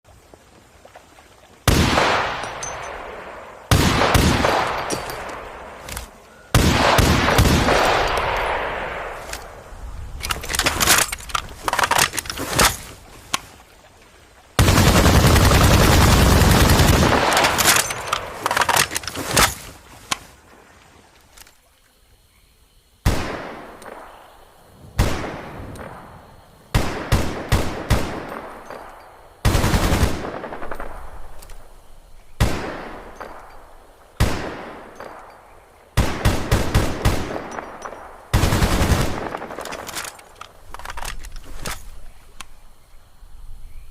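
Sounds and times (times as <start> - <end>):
rifle gunfire with echo: 1.7 - 5.8, 6.6 - 9.2, 25.0 - 26.1, 26.7 - 28.8, 32.4 - 33.4, 34.2 - 35.0, 36.0 - 39.5
automatic gunfire: 38.3 - 39.5.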